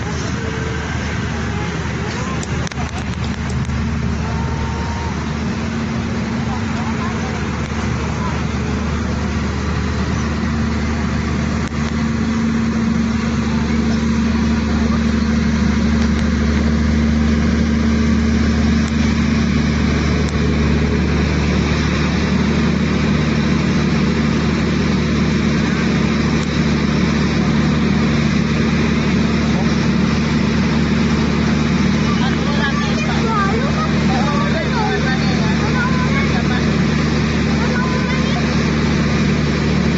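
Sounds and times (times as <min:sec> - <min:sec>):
engine hum: 0:00.0 - 0:39.9.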